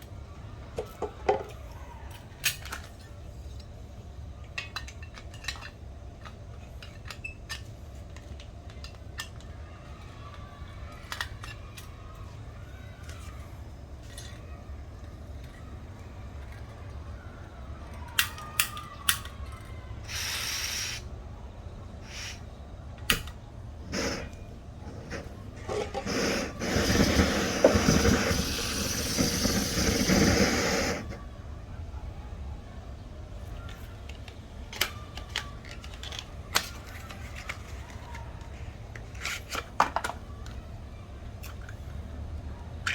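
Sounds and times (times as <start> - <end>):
steady hissing noise: 20.0 - 37.8.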